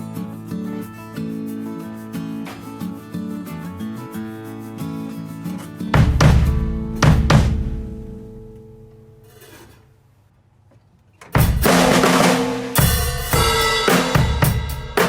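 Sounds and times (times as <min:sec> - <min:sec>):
heavy snare drum hits: 0:06.0 - 0:08.0, 0:11.4 - 0:15.0
full drum kit playing: 0:06.0 - 0:08.2, 0:11.4 - 0:15.0.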